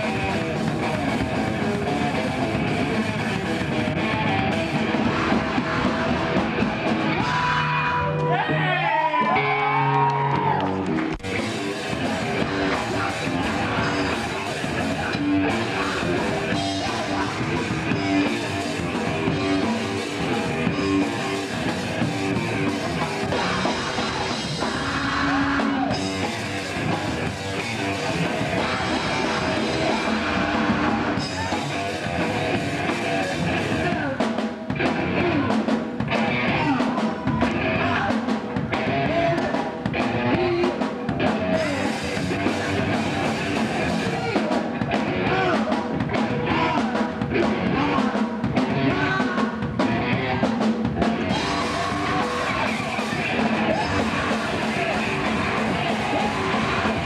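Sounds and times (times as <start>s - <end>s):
loud rock music: 0.0s - 57.0s.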